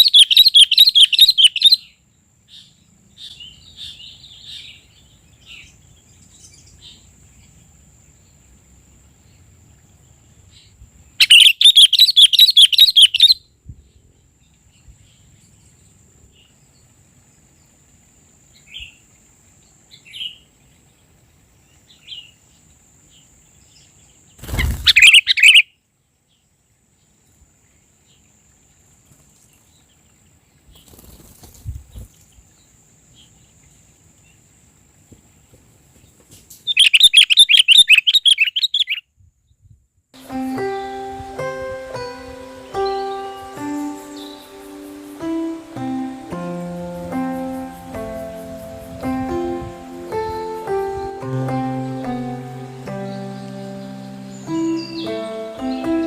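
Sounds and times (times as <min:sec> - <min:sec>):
birds chirping: 0:00.0 - 0:01.8, 0:11.2 - 0:13.4, 0:24.4 - 0:25.6, 0:36.7 - 0:39.0, 0:40.2 - 0:56.0
bird rapid chattering: 0:24.4 - 0:25.6.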